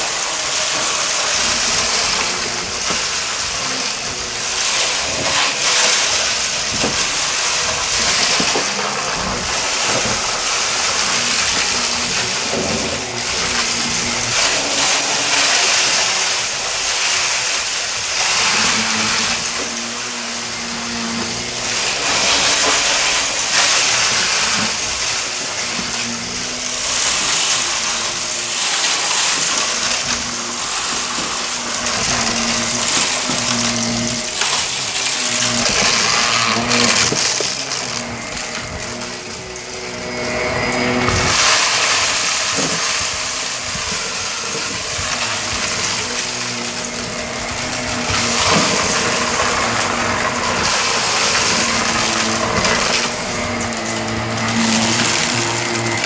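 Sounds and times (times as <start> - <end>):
debris crackling in vacuum: 0.0 - 56.0
vacuum cleaner running on carpet: 0.0 - 56.0.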